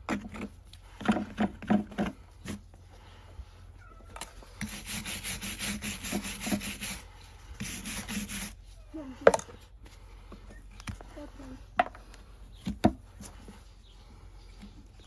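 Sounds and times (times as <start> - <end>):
rasp filing hoof: 4.5 - 8.6.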